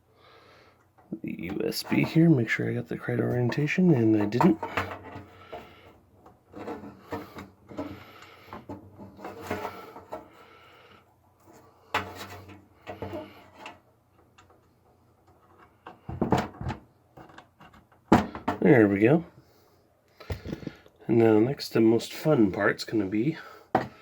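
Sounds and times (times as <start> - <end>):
plastic rubbing and scraping: 1.1 - 10.5, 11.4 - 13.9.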